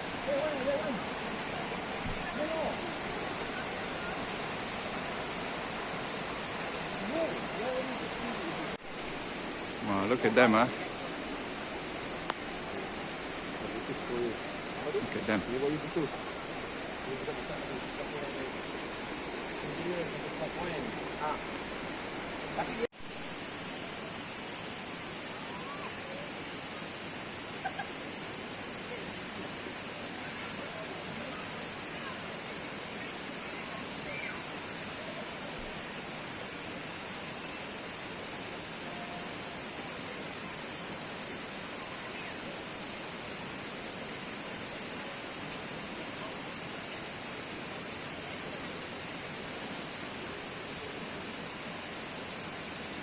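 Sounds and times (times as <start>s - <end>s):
distant voices: 0.0s - 22.9s
high-pitched hiss: 0.0s - 53.0s
river water rushing: 0.0s - 53.0s.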